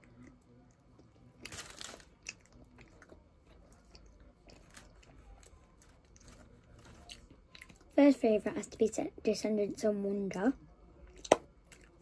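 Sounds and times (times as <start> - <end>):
person chewing and crunching food: 0.0 - 8.0, 11.1 - 12.0.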